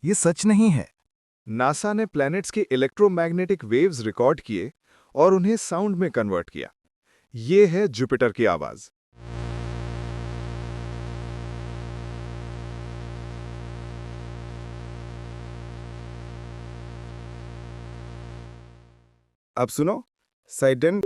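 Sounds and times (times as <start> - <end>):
low electronic drone with flutter: 9.2 - 19.3.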